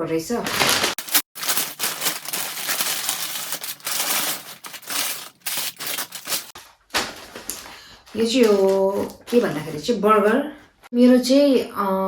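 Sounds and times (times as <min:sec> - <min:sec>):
paper packaging crinkling: 0:00.4 - 0:09.9.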